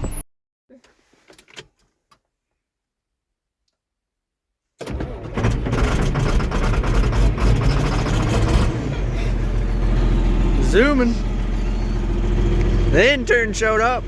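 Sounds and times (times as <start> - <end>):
heavy vehicle engine running: 4.9 - 14.0.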